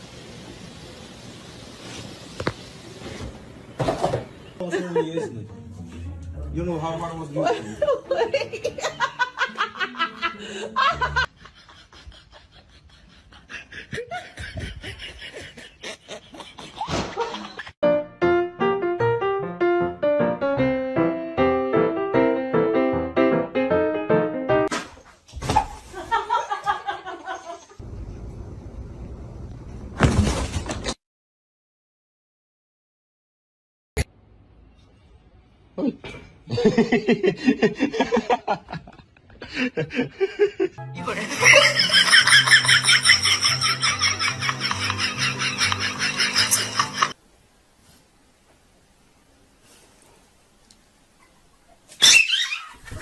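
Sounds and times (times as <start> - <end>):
person laughing breathy giggles: 7.5 - 17.7, 36.1 - 47.2.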